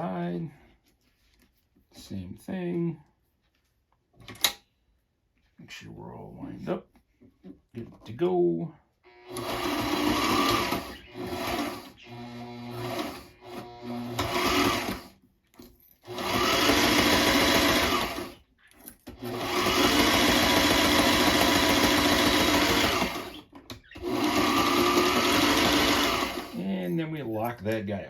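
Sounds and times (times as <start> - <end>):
sewing machine stitching leather: 9.3 - 15.2, 16.0 - 18.4, 19.0 - 26.6.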